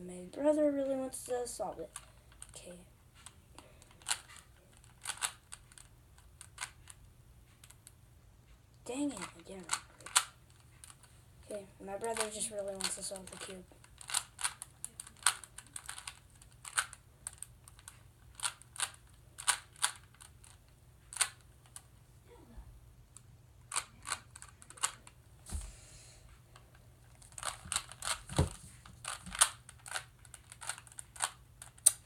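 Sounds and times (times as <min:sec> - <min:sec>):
puzzle cube layers clicking: 0:29.0 - 0:32.0.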